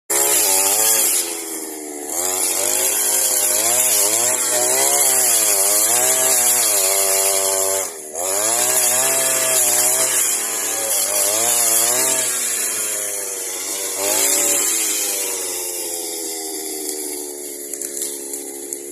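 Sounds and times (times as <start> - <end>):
brushcutter cutting wood: 0.1 - 18.9.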